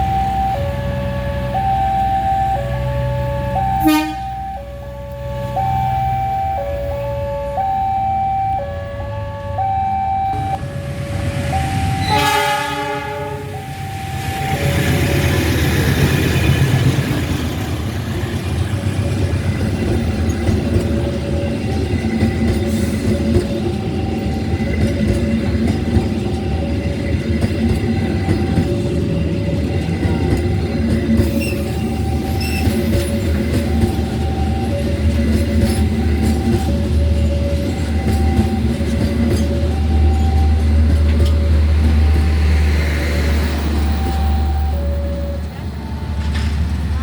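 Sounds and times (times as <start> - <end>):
level crossing alarm: 0.0 - 16.1, 20.4 - 47.0
train horn blast: 3.8 - 4.6, 11.9 - 13.6
train rumbling and clattering past: 10.5 - 47.0.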